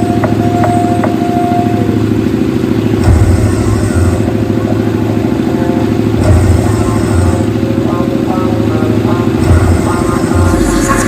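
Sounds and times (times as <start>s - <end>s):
heavy bass hit: 2.9s - 5.3s, 6.0s - 7.6s, 9.4s - 11.0s
distorted bass-heavy remix music: 2.9s - 11.0s.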